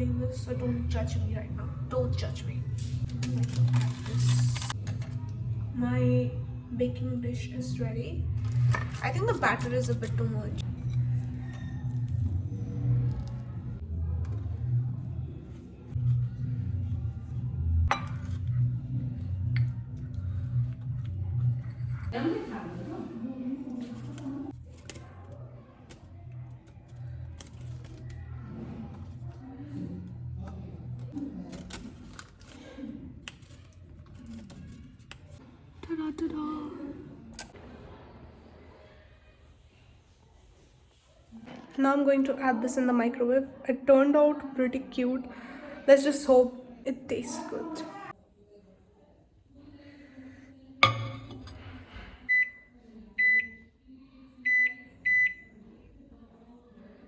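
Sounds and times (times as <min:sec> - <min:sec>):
microwave keypad beeps: 0:52.3 - 0:53.6, 0:54.5 - 0:55.5.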